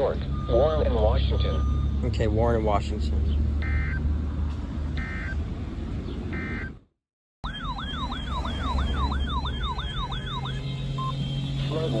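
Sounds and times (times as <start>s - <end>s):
yelping siren: 3.6s - 4.1s, 5.0s - 5.4s, 6.4s - 6.8s, 7.4s - 12.0s
buzzy two-tone data chirps: 7.4s - 12.0s.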